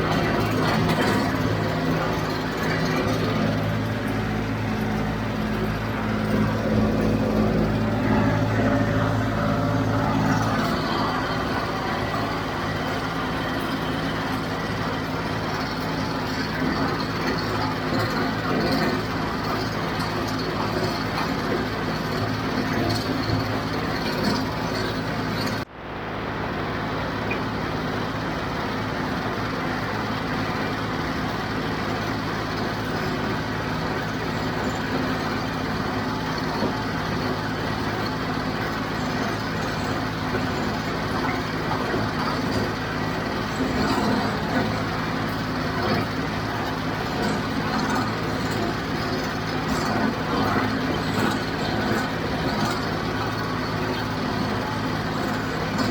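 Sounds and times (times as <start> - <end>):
square baler working: 0.0 - 55.9
tractor diesel engine: 0.0 - 55.9.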